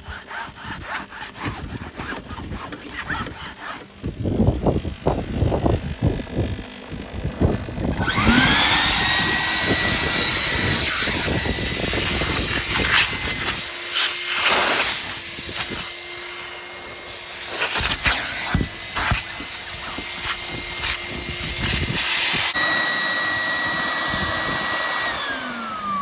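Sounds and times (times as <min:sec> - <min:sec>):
rubbing and knocking: 0:00.0 - 0:04.5
vacuum cleaner motor whining: 0:01.6 - 0:26.0.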